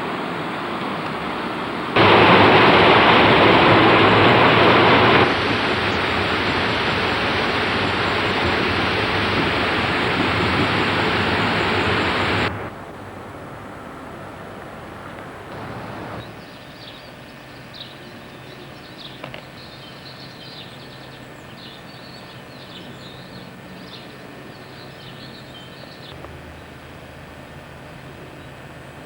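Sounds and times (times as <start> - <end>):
steady rushing noise: 0.0 - 16.5.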